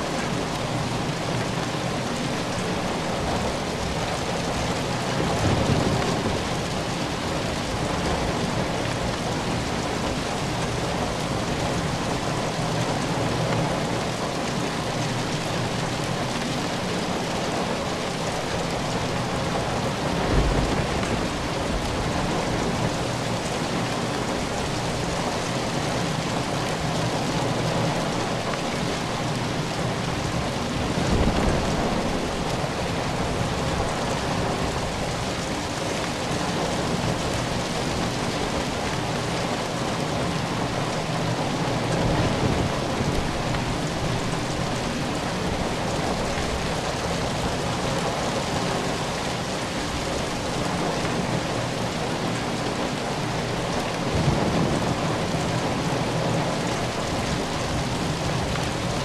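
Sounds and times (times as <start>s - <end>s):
heavy rain: 0.0s - 59.0s
distant thunder rumbles: 20.1s - 22.9s.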